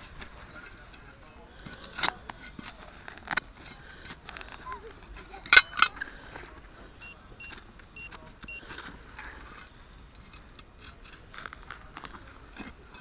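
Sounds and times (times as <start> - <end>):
rustling and light scraping: 0.0 - 13.0
metal detector beeps: 7.0 - 8.8.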